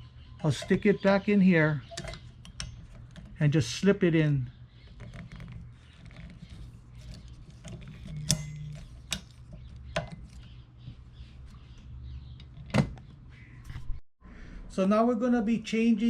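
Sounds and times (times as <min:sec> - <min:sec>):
small handling rattles: 0:01.8 - 0:03.5, 0:04.8 - 0:13.1.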